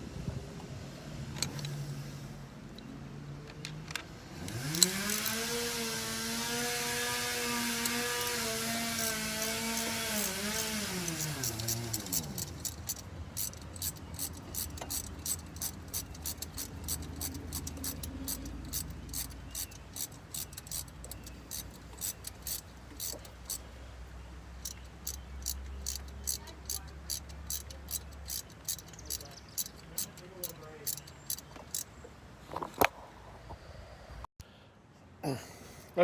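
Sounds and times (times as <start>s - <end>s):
ratchet clicking: 3.6s - 23.7s, 24.6s - 31.9s
power tool motor running: 4.3s - 23.6s.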